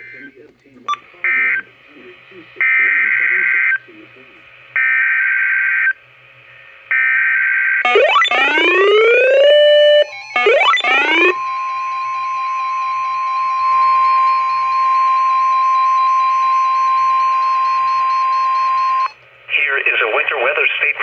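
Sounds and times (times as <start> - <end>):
rising multi-tone glides: 7.9 - 16.6.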